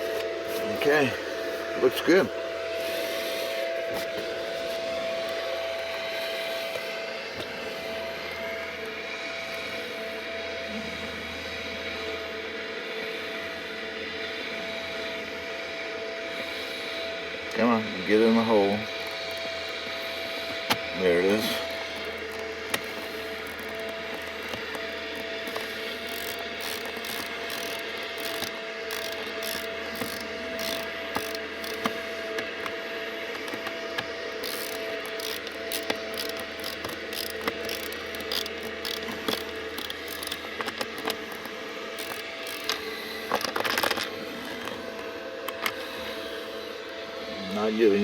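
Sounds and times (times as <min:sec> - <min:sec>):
steady hum: 0:15.6 - 0:48.0
plastic trim clicks and rattles: 0:21.9 - 0:32.0, 0:33.4 - 0:44.8.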